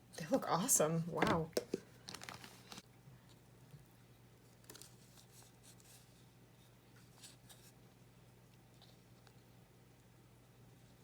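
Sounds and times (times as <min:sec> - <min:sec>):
low steady hum: 0:00.0 - 0:11.0
plant packaging clicks and rustles: 0:01.6 - 0:02.8, 0:04.4 - 0:06.1.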